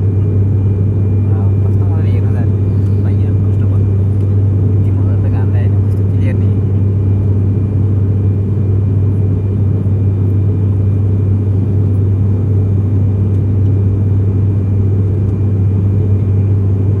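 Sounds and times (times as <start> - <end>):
airliner cabin rumble in flight: 0.0 - 17.0.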